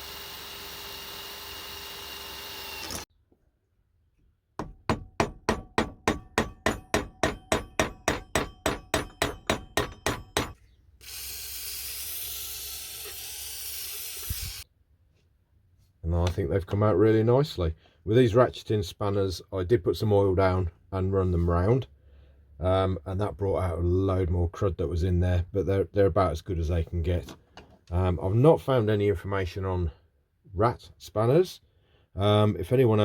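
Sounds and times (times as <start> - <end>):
electric drill running: 0.0 - 3.1, 11.0 - 14.6
hammer striking metal: 4.6 - 10.6.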